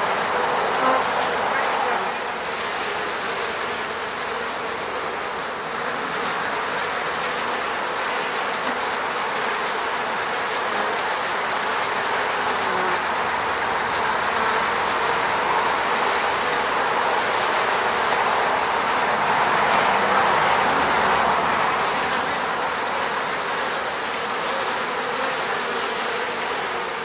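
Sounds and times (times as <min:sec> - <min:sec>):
bees buzzing: 0:00.0 - 0:27.0.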